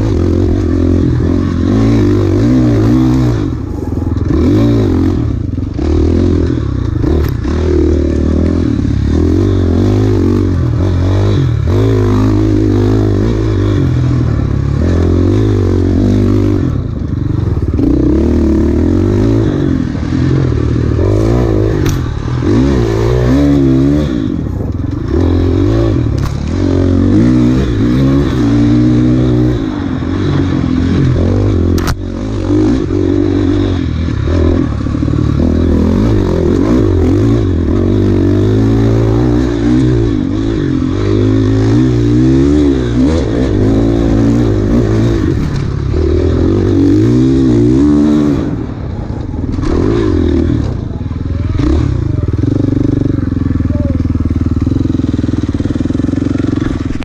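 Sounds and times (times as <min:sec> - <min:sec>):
clattering over rough trail: 0:00.0 - 0:57.0
dirt bike engine revving: 0:00.0 - 0:57.0
sharp click: 0:31.7 - 0:32.0.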